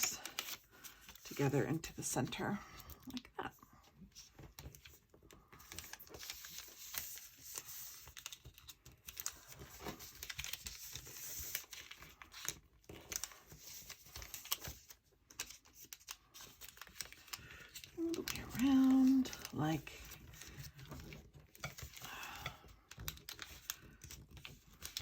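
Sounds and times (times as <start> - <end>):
paper rustling and crinkling: 0.0 - 3.2, 3.8 - 25.0.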